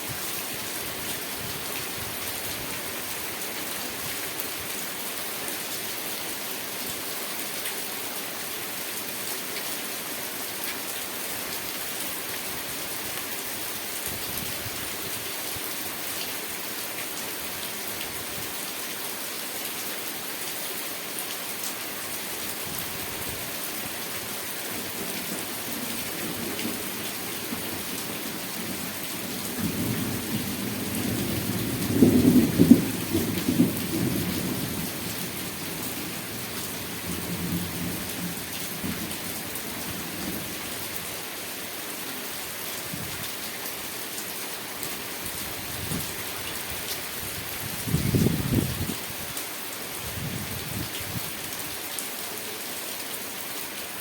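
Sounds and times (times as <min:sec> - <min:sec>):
steady rain falling: 0:00.0 - 0:54.0
low rumble of thunder: 0:29.4 - 0:34.7.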